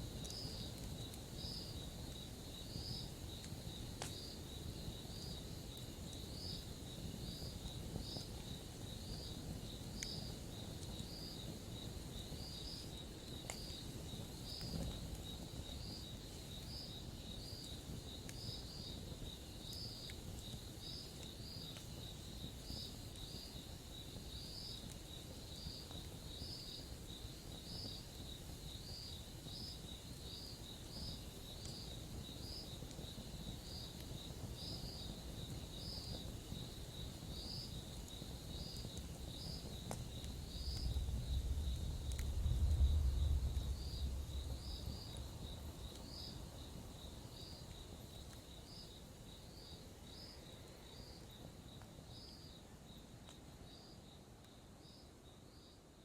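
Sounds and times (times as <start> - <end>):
campfire popping: 0.0 - 53.6
crickets chirping: 0.0 - 56.0
low even rumble: 40.9 - 45.7.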